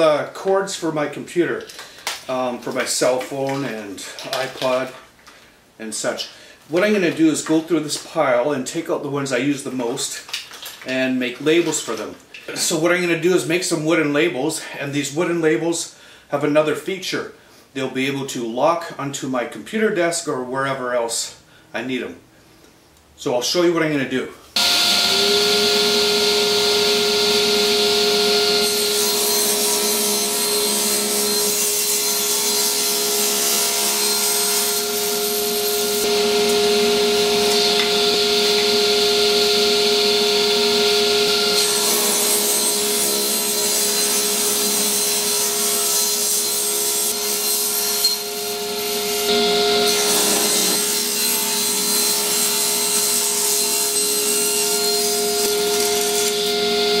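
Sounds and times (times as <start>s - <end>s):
power tool cutting wood: 24.6s - 57.0s.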